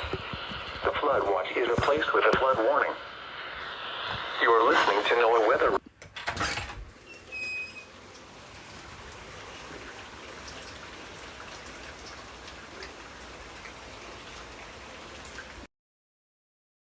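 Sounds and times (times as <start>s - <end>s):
burst of radio noise: 0.0s - 5.8s
radio static with crackles: 0.0s - 5.9s.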